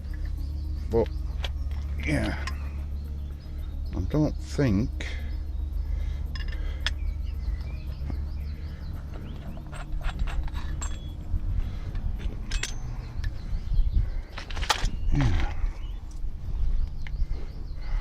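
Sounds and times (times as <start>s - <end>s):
metal parts and tools clinking: 0.0s - 2.9s, 6.2s - 16.3s
steady low rumble: 0.0s - 18.0s.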